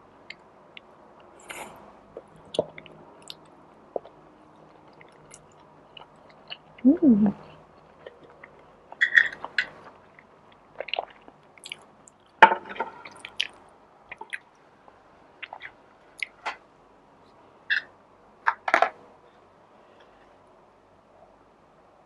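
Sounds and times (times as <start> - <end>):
chewing with wet mouth clicks: 2.2 - 6.8, 7.5 - 12.3, 13.0 - 14.5.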